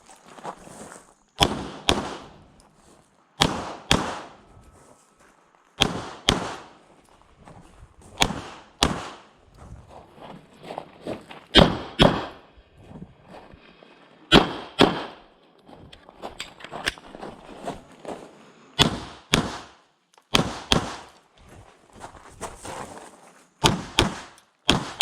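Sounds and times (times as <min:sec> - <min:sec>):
pistol shots: 0:01.4 - 0:02.4, 0:03.4 - 0:04.4, 0:05.8 - 0:06.8, 0:08.2 - 0:09.4, 0:11.6 - 0:12.4, 0:14.3 - 0:15.3, 0:18.8 - 0:21.2, 0:23.6 - 0:25.0.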